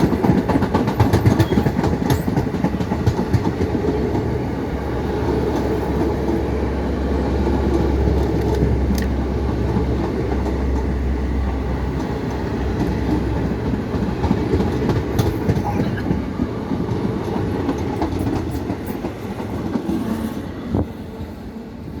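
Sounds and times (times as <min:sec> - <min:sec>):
train wheels clattering over rail joints: 0:00.0 - 0:06.6, 0:11.8 - 0:20.9.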